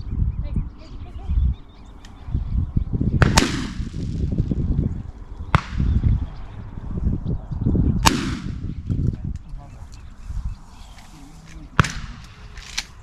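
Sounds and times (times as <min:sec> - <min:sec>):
shotgun shots with echo: 0:03.2 - 0:04.2, 0:05.5 - 0:06.1, 0:08.0 - 0:08.7, 0:11.8 - 0:12.7.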